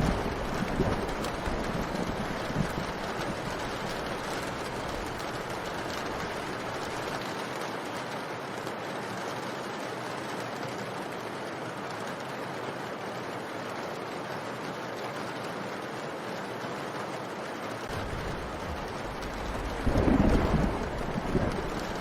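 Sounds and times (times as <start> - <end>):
steady rain: 0.0 - 22.0
deep rumble: 17.9 - 22.0.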